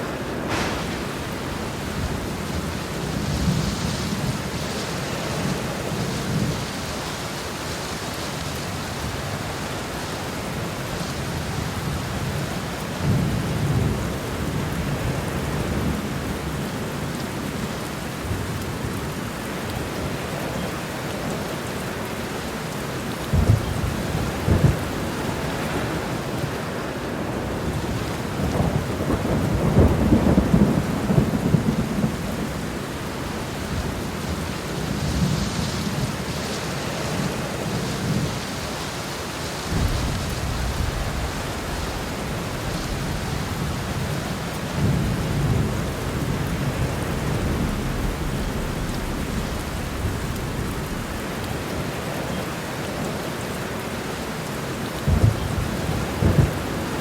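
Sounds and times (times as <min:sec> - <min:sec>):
thunder rumbling: 0:00.0 - 0:06.8, 0:23.3 - 0:38.4, 0:39.6 - 0:52.4, 0:55.0 - 0:57.0
heavy rain: 0:00.0 - 0:57.0.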